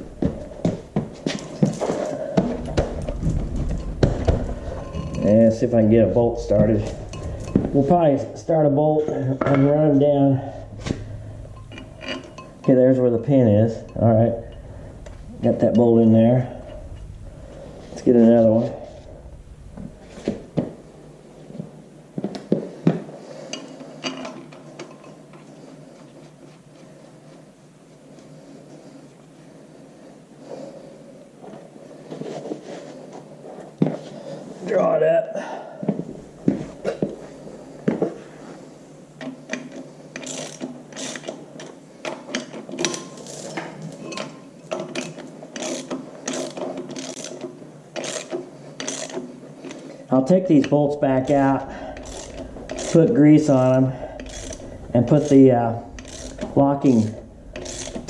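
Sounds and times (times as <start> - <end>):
metal clinks and knocks: 1.3 - 5.5, 6.5 - 8.0, 10.9 - 12.9
ratchet wrench clicking: 40.2 - 41.3, 45.0 - 47.4, 48.0 - 49.2, 52.0 - 53.0, 54.2 - 55.4, 56.0 - 58.0.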